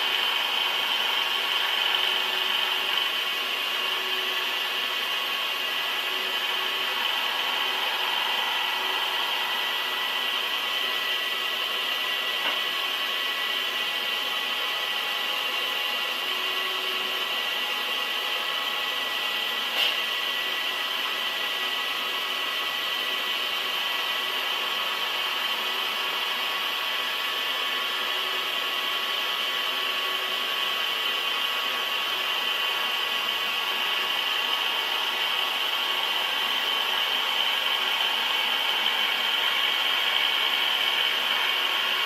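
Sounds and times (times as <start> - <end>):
high whining tones: 0.0 - 13.7
industrial lathe running: 0.0 - 42.0.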